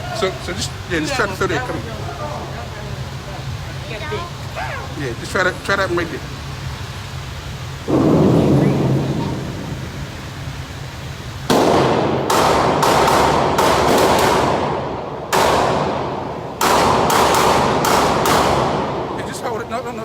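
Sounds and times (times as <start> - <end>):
fainter distant gunshots: 11.5 - 19.2.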